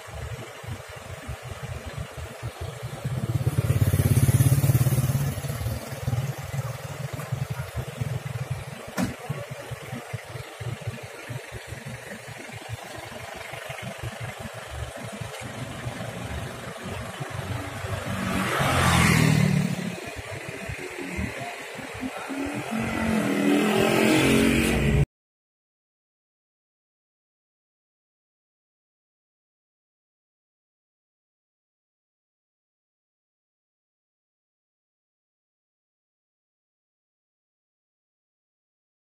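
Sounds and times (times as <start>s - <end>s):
diesel engines running: 0.0s - 25.0s.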